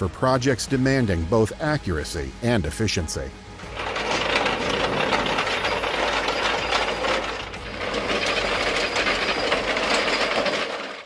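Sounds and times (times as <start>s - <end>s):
trencher mechanical clatter: 3.6s - 11.0s.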